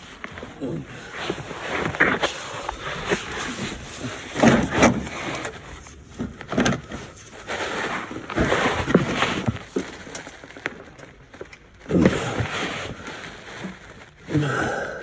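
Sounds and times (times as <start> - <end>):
person breathing hard: 14.3 - 15.0.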